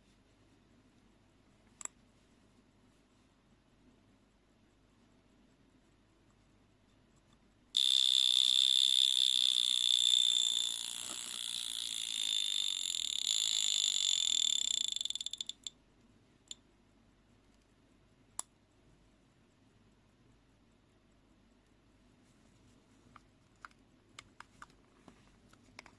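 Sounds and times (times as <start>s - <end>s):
alarm clock buzzing: 7.8s - 15.7s.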